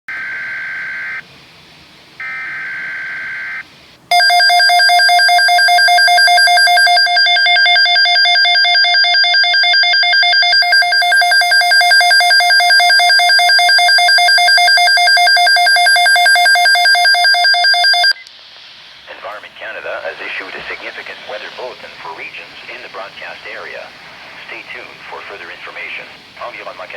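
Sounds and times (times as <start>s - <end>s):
pulsing alert alarm beep: 2.3s - 18.2s.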